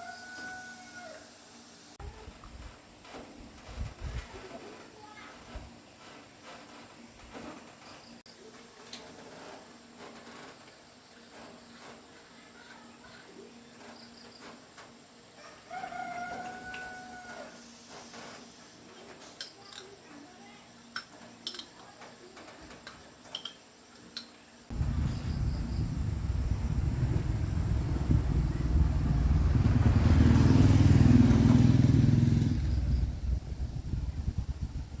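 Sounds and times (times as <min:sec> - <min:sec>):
rooster crowing: 0:00.0 - 0:01.4, 0:15.4 - 0:17.6
motorcycle engine starting and running: 0:24.7 - 0:35.0.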